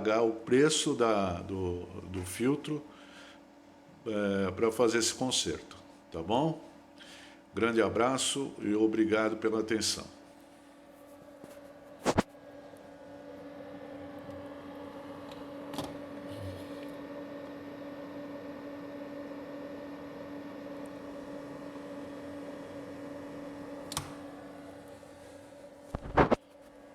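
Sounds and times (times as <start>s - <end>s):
cooling fan humming: 0.0s - 26.9s.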